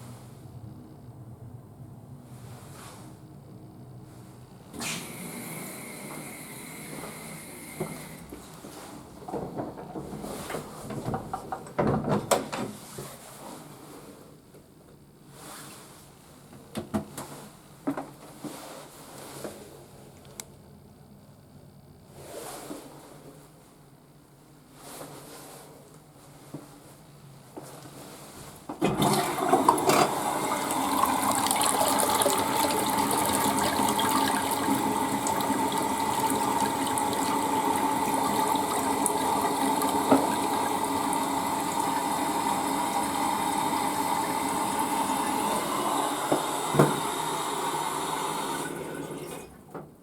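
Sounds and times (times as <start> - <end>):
toilet flushing: 4.8 - 8.3, 28.8 - 49.7
running water: 28.8 - 49.6.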